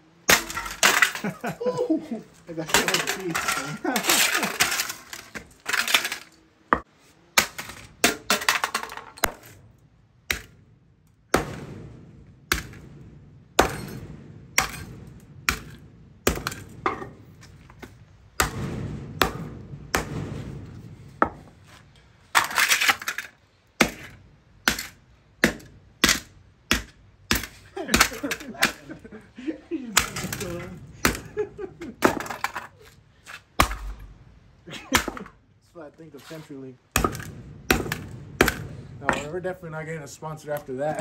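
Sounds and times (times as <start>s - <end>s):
plastic pieces rattling: 2.6s - 6.4s
sledgehammer striking plastic box: 37.0s - 39.3s.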